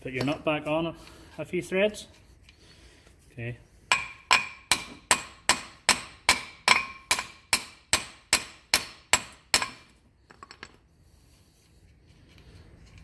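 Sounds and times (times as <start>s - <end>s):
hammer ringing on metal: 3.9s - 9.8s.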